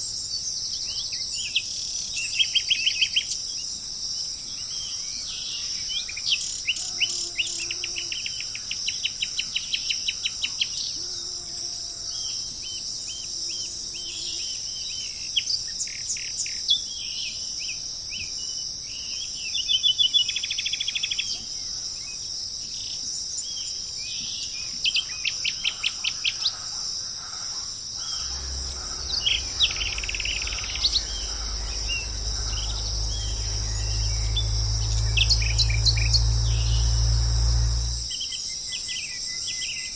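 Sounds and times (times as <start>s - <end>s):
birds singing and trilling: 28.0s - 38.1s
high-pitched insect chorus: 28.0s - 38.1s
low rumble: 28.0s - 38.1s.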